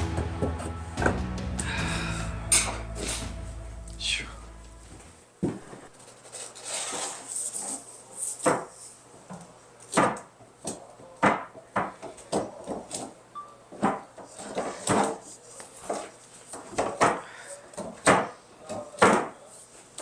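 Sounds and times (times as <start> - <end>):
scraping and rustling: 4.9 - 9.0.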